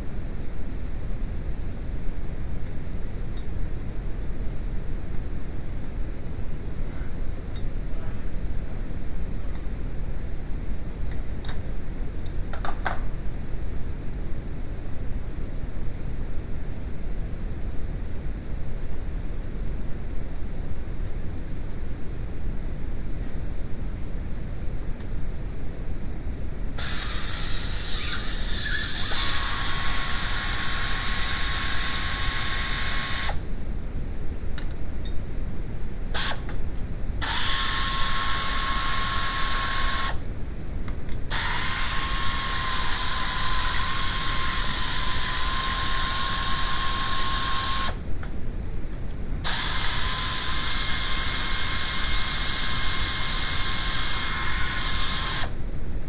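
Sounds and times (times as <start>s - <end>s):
constant low rumble: 0.0s - 37.4s, 38.1s - 47.1s, 48.0s - 49.6s
power tool whining: 26.8s - 33.4s, 37.2s - 40.2s, 41.3s - 48.0s, 49.4s - 55.5s.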